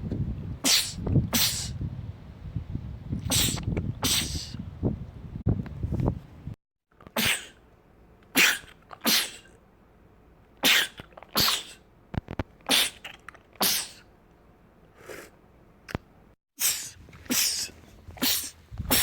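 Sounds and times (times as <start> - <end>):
man sneezing: 0.7 - 1.8, 3.3 - 4.6, 7.2 - 7.6, 13.6 - 14.0, 16.6 - 19.0.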